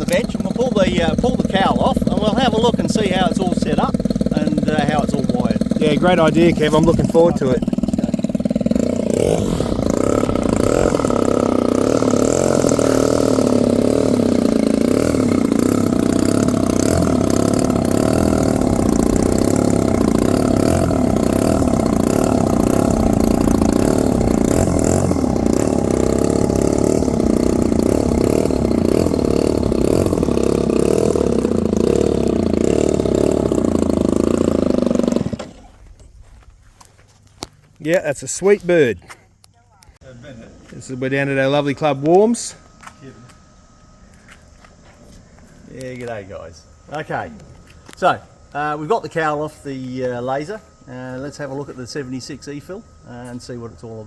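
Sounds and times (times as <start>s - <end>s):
model aircraft engine running: 0.0s - 36.2s.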